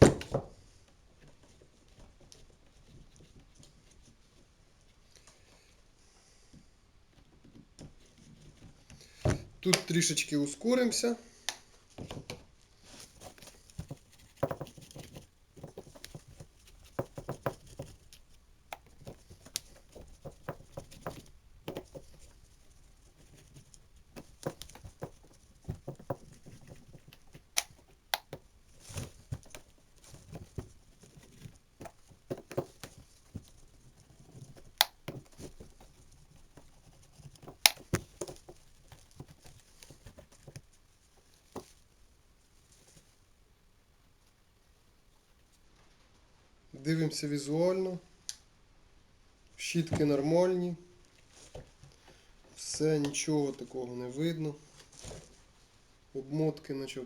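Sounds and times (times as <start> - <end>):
hammer drill parts clattering: 13.2 - 40.6
sharp clicks: 27.1 - 28.4.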